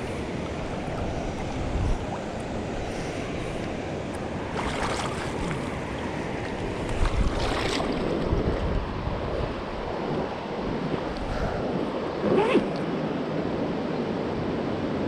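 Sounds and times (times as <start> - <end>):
wind buffeting microphone: 0.0 - 13.8
river water rushing: 0.0 - 15.0.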